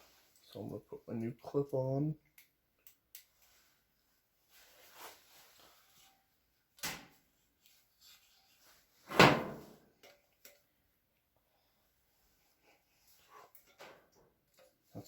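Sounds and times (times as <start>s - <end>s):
soft rustling: 3.3s - 6.3s.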